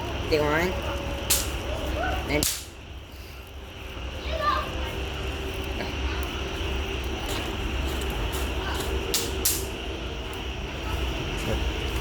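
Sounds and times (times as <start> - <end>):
steady low rumble: 0.0 - 12.0
sharp snaps: 1.3 - 1.7, 2.4 - 2.8, 9.1 - 9.7.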